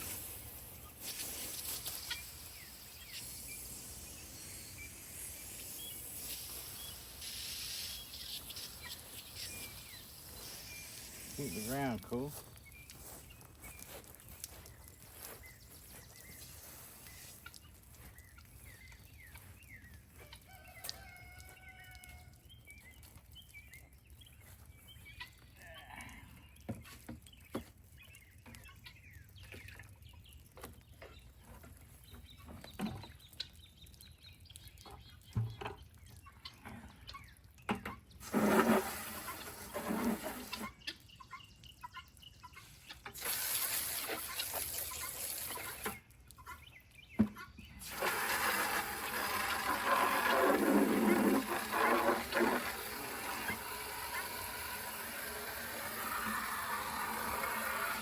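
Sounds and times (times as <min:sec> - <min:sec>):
water hissing from hose: 0:00.0 - 0:13.1, 0:13.7 - 0:18.1, 0:38.2 - 0:40.8, 0:43.1 - 0:46.0, 0:47.8 - 0:58.0
chickens clucking: 0:07.2 - 0:11.3, 0:34.8 - 0:43.3, 0:43.9 - 0:58.0
rooster crowing: 0:20.5 - 0:22.3.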